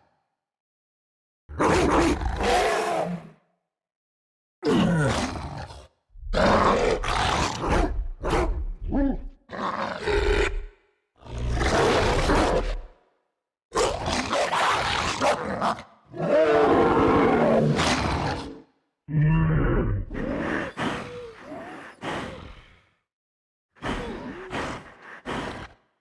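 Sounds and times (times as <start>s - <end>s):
werewolf creature roars and snarls: 1.5s - 3.4s, 4.6s - 13.0s, 13.7s - 22.9s.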